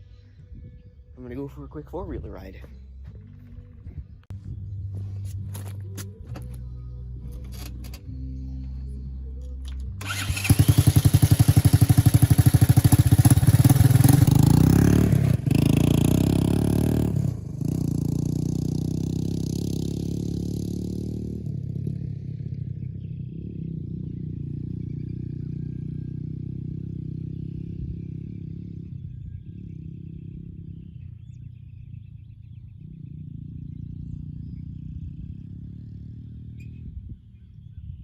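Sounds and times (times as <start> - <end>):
atv engine revving: 9.6 - 37.1.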